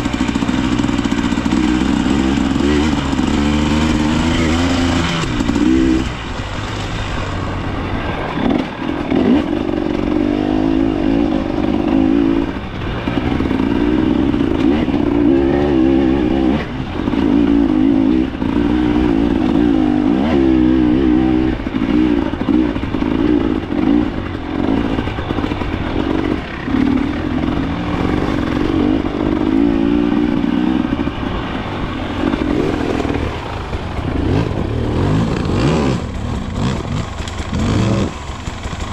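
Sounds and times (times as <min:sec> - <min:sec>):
motorcycle clatter: 0:00.0 - 0:38.9
motorcycle engine revving: 0:00.0 - 0:38.9.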